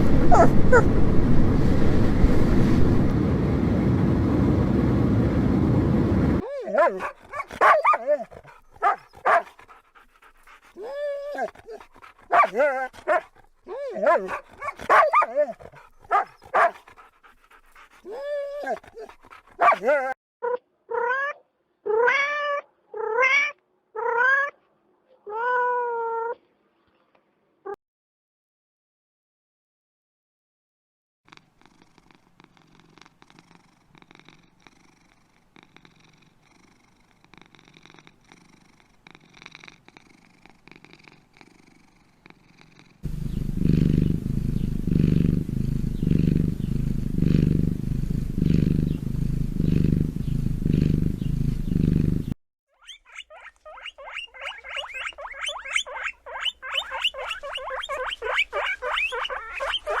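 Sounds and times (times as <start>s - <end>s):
cat purring loudly: 0.0s - 13.3s, 31.3s - 52.4s, 54.4s - 60.0s
rodent squeaking: 52.7s - 60.0s.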